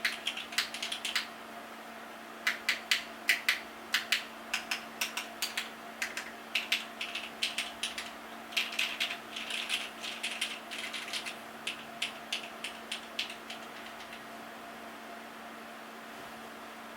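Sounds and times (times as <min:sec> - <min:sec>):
mechanical keyboard keystrokes: 0:00.0 - 0:01.3, 0:02.5 - 0:14.2.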